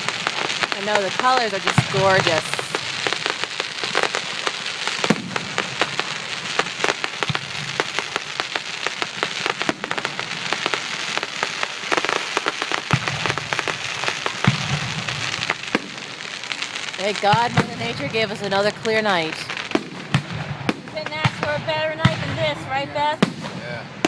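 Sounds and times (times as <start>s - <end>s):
deep firework bangs: 0.0s - 24.0s
fireworks crackling: 0.0s - 24.0s.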